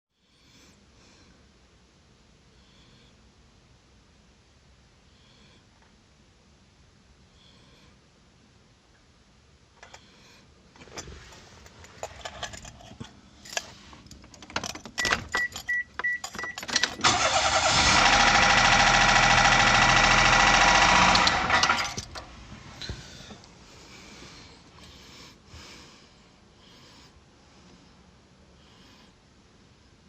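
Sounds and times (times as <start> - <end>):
car engine harsh mechanical noise: 10.7 - 24.3
clicks and rustling: 10.8 - 17.2.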